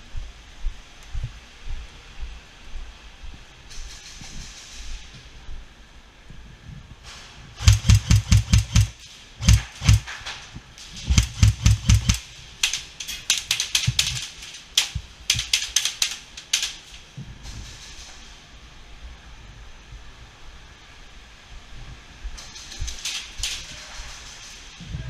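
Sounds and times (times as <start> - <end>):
airsoft gun rapid shots: 7.6 - 10.3, 11.0 - 16.9.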